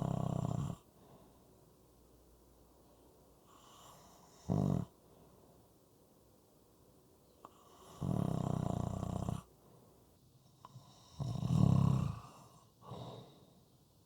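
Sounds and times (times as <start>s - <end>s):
person snoring: 4.5s - 4.9s, 7.9s - 9.4s, 11.0s - 13.1s.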